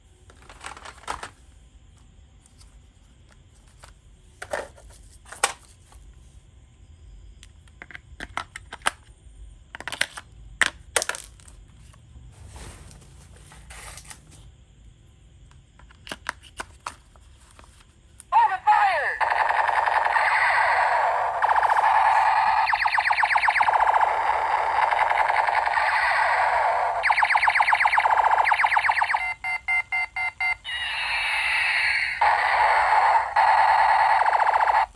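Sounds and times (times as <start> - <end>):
packaging rustling: 0.3 - 1.4.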